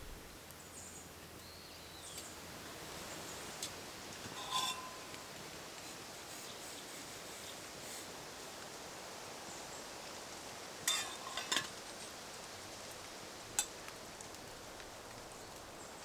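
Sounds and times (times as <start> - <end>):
faint outdoor hiss: 0.0 - 16.0
dishes and utensils clinking: 4.2 - 5.3, 10.9 - 11.8.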